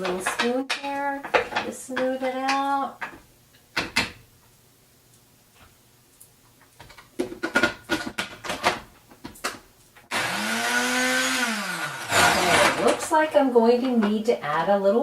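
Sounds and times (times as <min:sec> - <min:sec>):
blender motor: 0:10.1 - 0:13.0.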